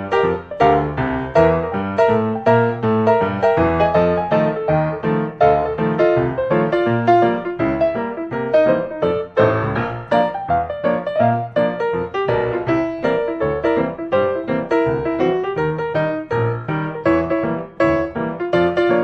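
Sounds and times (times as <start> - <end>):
lively piano music: 0.0 - 19.0.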